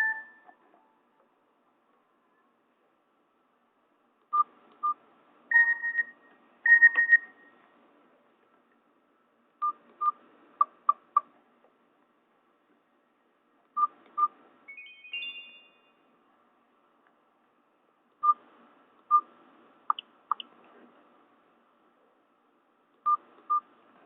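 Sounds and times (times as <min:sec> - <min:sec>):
two-note phone tones: 0:00.0 - 0:00.5, 0:14.7 - 0:16.0
mobile phone electronic beeps: 0:00.0 - 0:00.6, 0:04.4 - 0:07.5, 0:13.8 - 0:16.0.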